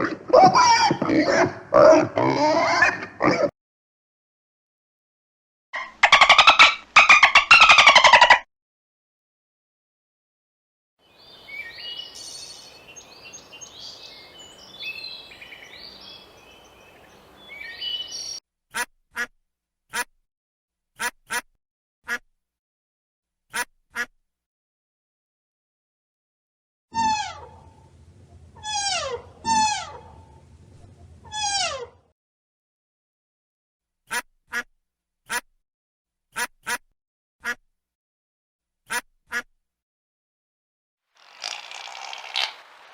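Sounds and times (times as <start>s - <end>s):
birds calling: 11.1s - 18.4s
duck quacking: 19.9s - 20.1s, 21.0s - 21.5s, 23.5s - 24.1s, 34.1s - 34.7s, 35.3s - 35.5s, 36.4s - 36.8s, 38.9s - 39.5s
drawn-out animal call: 27.0s - 31.9s, 41.2s - 42.9s.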